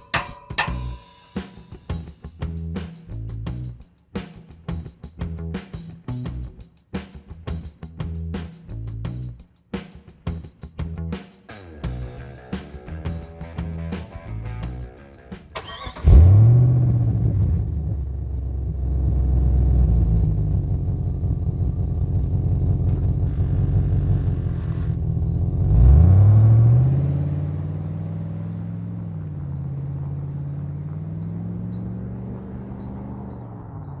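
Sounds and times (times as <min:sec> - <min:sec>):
car engine starting and idling: 0:15.4 - 0:34.0
engine revving: 0:15.6 - 0:34.0.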